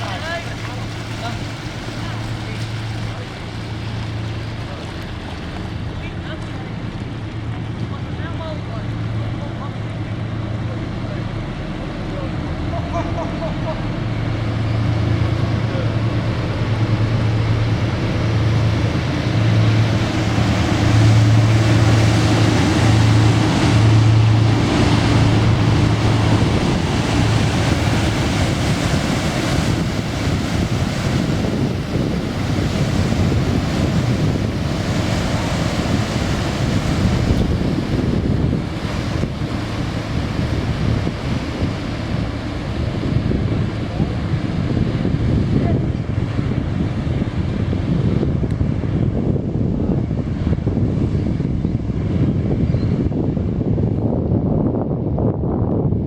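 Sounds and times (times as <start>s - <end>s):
ship engine drone: 0.0s - 56.0s
wind rushing on microphone: 0.0s - 56.0s.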